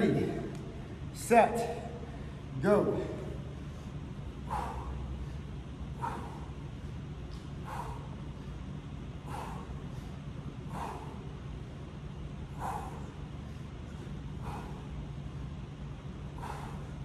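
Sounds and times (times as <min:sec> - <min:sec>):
steady low hum: 0:00.0 - 0:17.0
person breathing hard: 0:03.4 - 0:17.0.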